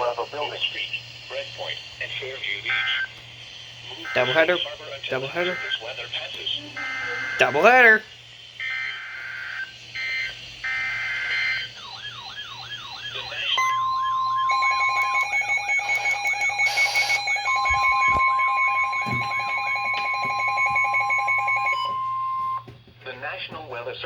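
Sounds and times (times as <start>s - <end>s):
warbling alarm: 0.0s - 22.7s
short data bursts: 13.1s - 22.6s
high-pitched attention tones: 13.6s - 22.6s.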